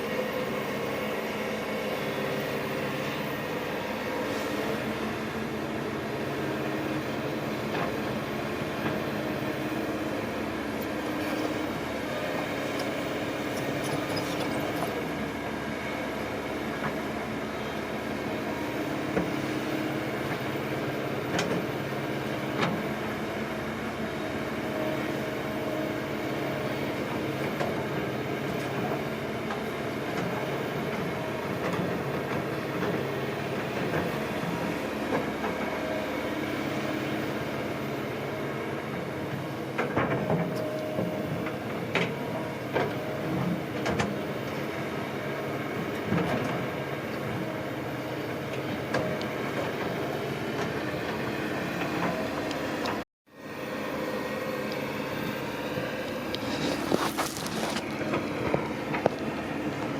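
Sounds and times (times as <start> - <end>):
diesel engine running: 0.0 - 21.3.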